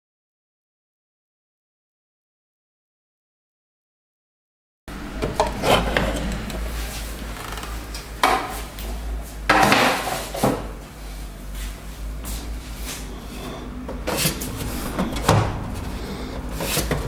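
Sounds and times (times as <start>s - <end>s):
steady low hum: 4.9s - 9.6s, 10.6s - 17.0s
knocks and clicks of handling: 5.2s - 8.5s
hard objects scraping: 12.7s - 17.0s.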